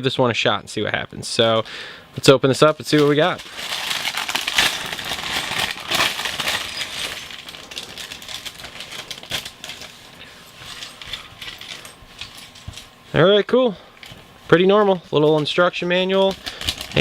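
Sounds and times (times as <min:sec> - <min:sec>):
plastic bag crinkling: 0:02.7 - 0:13.0, 0:15.4 - 0:17.0.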